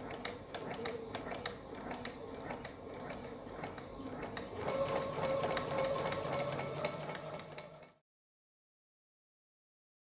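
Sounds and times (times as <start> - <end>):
sewing machine stitching: 0.0 - 8.0.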